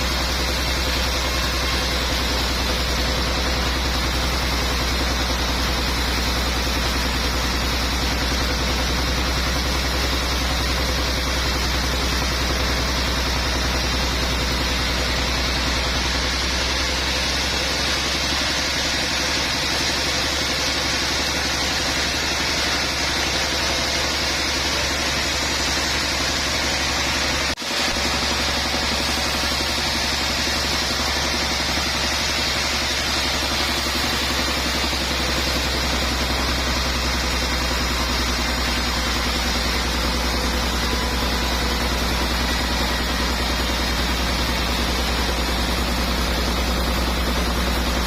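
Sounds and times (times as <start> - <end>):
sawmill machinery running: 0.0 - 48.0.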